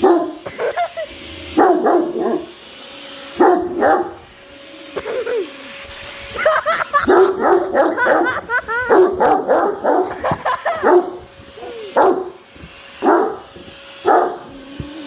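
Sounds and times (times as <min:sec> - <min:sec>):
dog barking and yipping: 0:00.0 - 0:02.6, 0:03.4 - 0:04.3, 0:06.4 - 0:12.4, 0:13.0 - 0:15.0.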